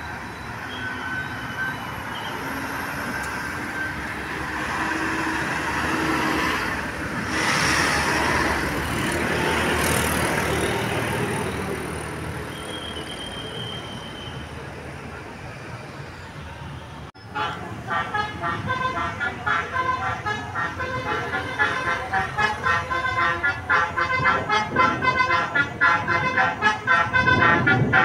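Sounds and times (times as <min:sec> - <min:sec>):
traffic noise: 0:00.0 - 0:28.0
vehicle passing close by: 0:02.4 - 0:12.5.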